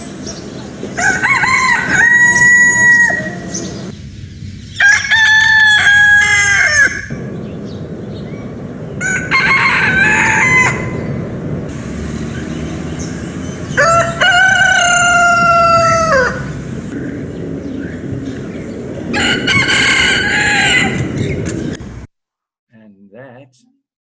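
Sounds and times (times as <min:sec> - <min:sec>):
rooster crowing: 0:00.9 - 0:03.7, 0:04.7 - 0:07.2, 0:09.0 - 0:11.1, 0:13.0 - 0:16.6, 0:19.1 - 0:21.3.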